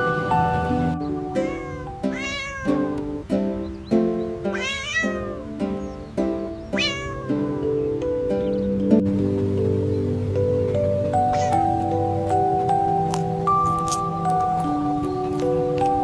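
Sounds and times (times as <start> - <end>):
plucked-string background music: 0.0 - 16.0
cat meowing: 1.3 - 3.0, 4.5 - 5.6, 6.7 - 7.6, 11.3 - 11.7.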